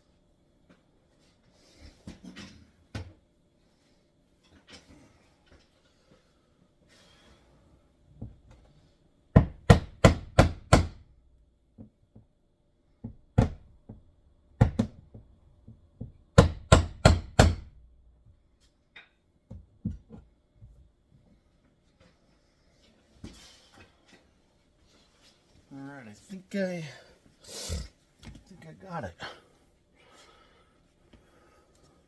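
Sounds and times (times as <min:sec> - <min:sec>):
hammer striking wood block: 0:09.3 - 0:11.0, 0:16.4 - 0:17.7.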